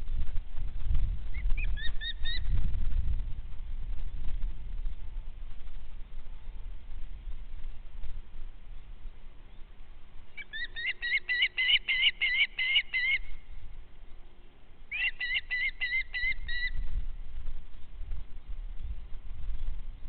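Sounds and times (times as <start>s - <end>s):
bird calling high notes: 10.3s - 16.8s.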